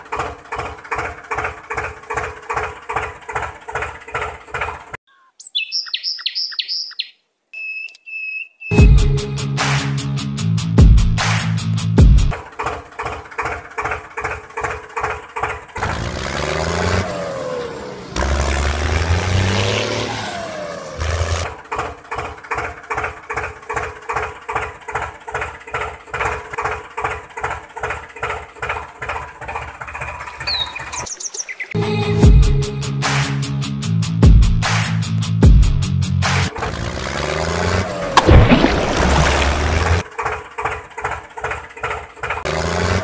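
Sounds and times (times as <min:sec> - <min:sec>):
toy tractor engine chugging: 0:00.0 - 0:05.0, 0:12.3 - 0:16.3, 0:21.4 - 0:31.1, 0:40.0 - 0:42.8
revving whine: 0:15.8 - 0:21.6, 0:36.4 - 0:40.0, 0:42.4 - 0:43.0.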